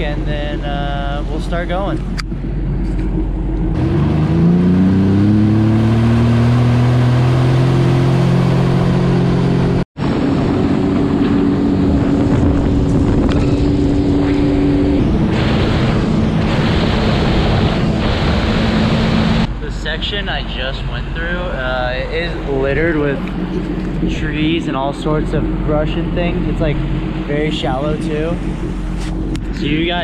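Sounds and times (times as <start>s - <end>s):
jet ski engine: 0.0s - 30.0s
rushing wind and water: 10.0s - 19.5s.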